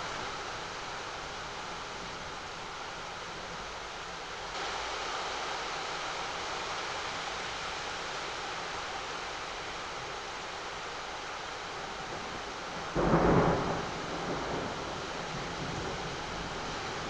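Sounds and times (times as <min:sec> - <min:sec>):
rain falling: 0:00.0 - 0:17.0.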